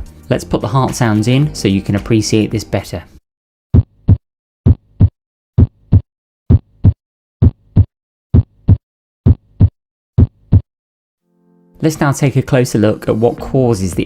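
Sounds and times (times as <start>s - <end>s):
heartbeat through stethoscope: 3.7s - 10.7s.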